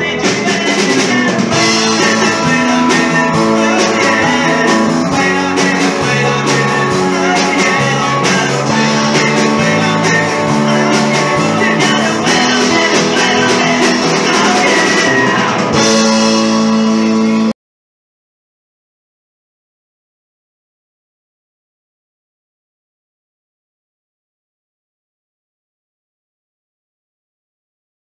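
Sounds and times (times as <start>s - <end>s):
rock band playing: 0.0s - 17.5s.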